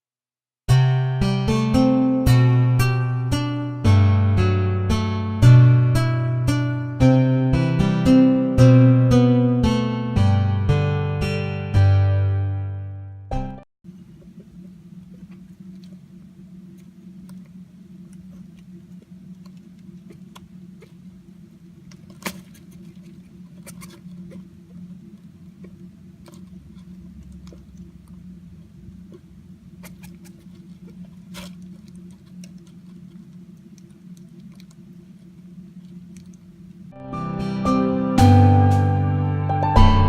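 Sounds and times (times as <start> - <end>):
steady low hum: 13.9 - 40.0.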